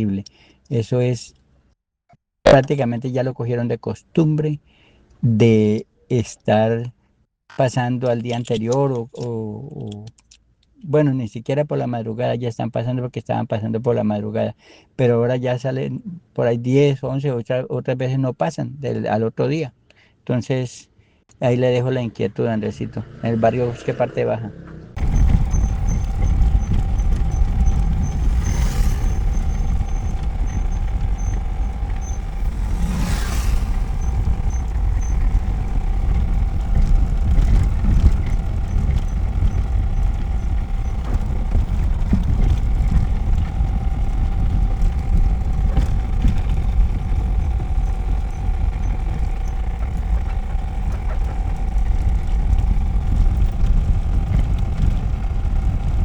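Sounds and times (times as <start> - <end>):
vehicle engine rumbling: 24.9 - 56.0
brief hisses: 28.1 - 35.1.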